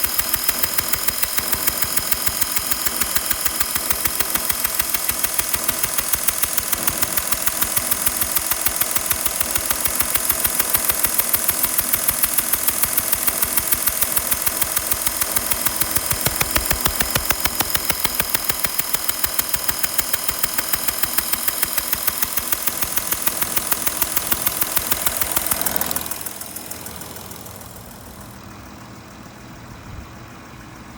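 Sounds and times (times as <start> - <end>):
rapid ticking puff: 0.0 - 28.6
diesel engine idling: 25.1 - 30.9.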